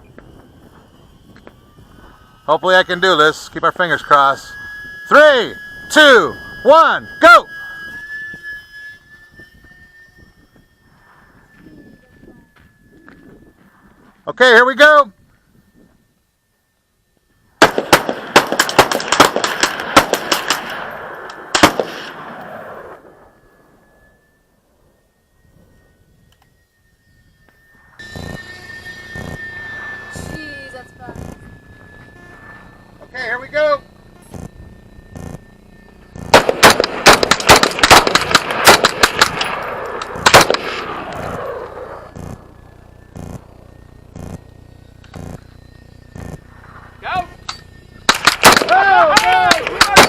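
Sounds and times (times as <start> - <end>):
rolling echo: 17.5 - 50.0
rapid gunfire volley: 17.6 - 20.7, 21.5 - 22.1, 36.3 - 39.4, 48.1 - 50.0.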